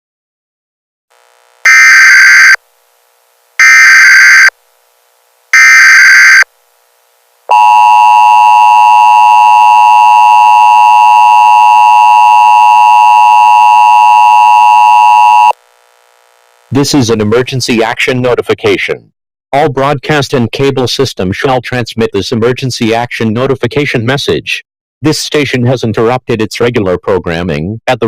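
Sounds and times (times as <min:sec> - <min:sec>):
digital data tone bursts: 0:01.6 - 0:02.6, 0:03.6 - 0:04.5, 0:05.5 - 0:06.4
two-tone attention signal: 0:01.7 - 0:02.6, 0:03.6 - 0:04.5, 0:05.6 - 0:06.4, 0:07.5 - 0:15.5.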